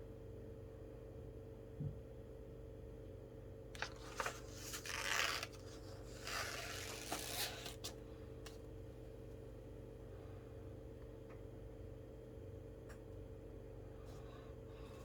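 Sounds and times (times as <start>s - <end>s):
paper rustling: 3.8s - 8.0s.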